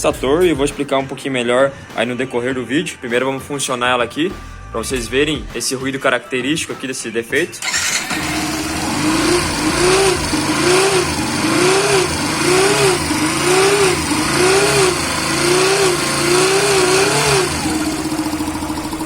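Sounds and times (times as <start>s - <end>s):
motorcycle engine revving: 7.6s - 19.0s.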